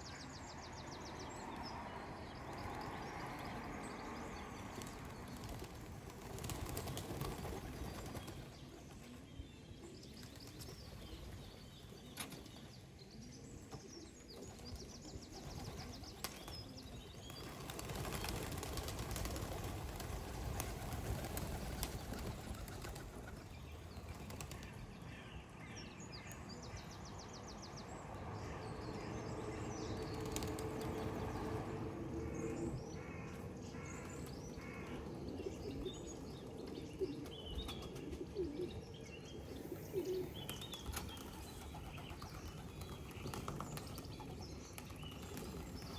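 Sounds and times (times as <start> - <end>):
pigeons flapping wings: 4.6 - 9.2, 15.3 - 24.7, 30.1 - 31.6, 40.5 - 45.9.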